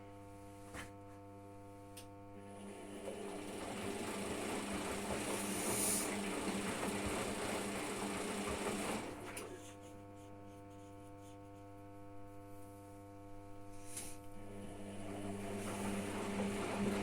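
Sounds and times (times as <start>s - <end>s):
washing machine running: 2.3s - 10.0s, 14.3s - 17.0s
low electric hum: 9.2s - 16.3s.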